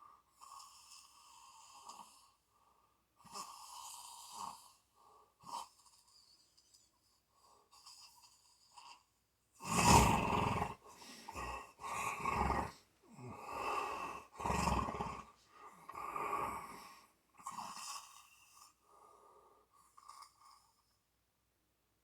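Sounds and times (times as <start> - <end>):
person snoring: 9.6 - 18.3.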